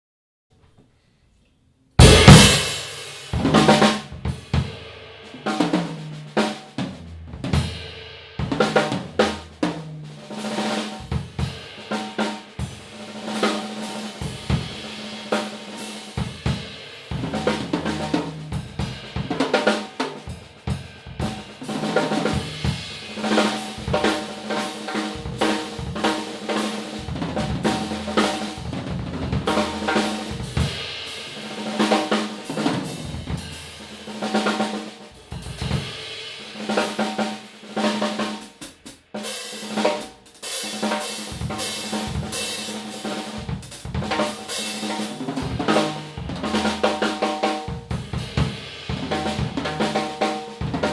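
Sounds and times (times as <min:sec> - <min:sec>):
cymbal strikes: 0:02.0 - 0:04.0
snare drum: 0:02.0 - 0:07.8, 0:08.4 - 0:50.9
bass drum: 0:02.0 - 0:11.6, 0:16.2 - 0:19.6, 0:20.2 - 0:31.5, 0:32.4 - 0:34.4, 0:35.1 - 0:36.1, 0:41.2 - 0:50.9
ringing tom drums: 0:02.0 - 0:50.9.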